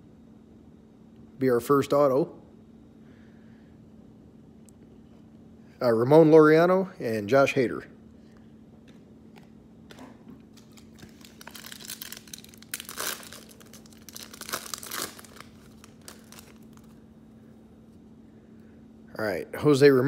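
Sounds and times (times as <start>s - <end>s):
faint steady hum: 0.0s - 20.0s
card pack wrapper tearing and crinkling: 9.9s - 17.0s.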